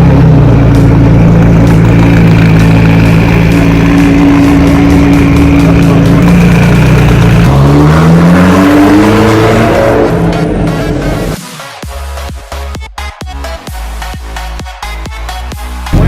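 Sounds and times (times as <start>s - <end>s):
car engine accelerating: 0.0s - 11.8s.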